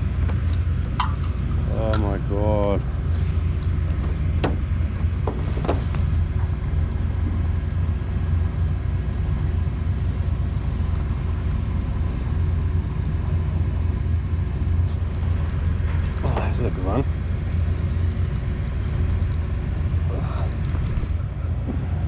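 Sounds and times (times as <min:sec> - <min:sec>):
steady low rumble: 0:00.0 - 0:22.0
faint clicks: 0:17.1 - 0:21.9.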